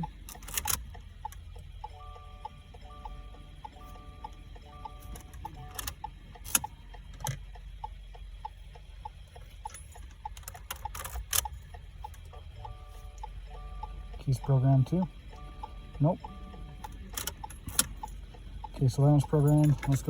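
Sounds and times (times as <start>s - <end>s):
hazard-light flasher ticking: 0.0s - 20.0s
sharp handling clicks: 0.2s - 1.4s, 9.6s - 12.2s, 16.8s - 20.0s
electronic beeping: 11.4s - 20.0s.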